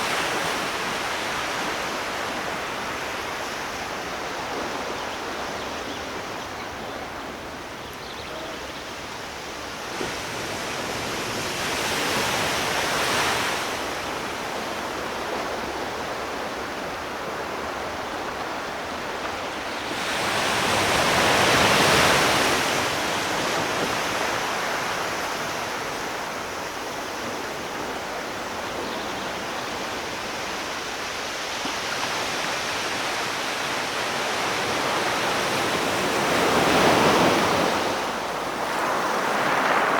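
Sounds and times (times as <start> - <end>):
sea waves washing ashore: 0.0 - 39.9.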